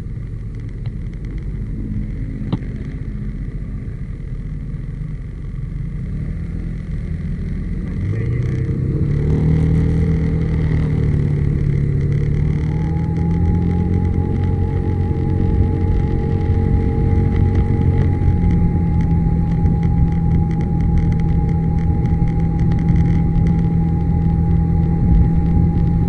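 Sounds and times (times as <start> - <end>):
scooter engine humming: 0.0 - 26.0.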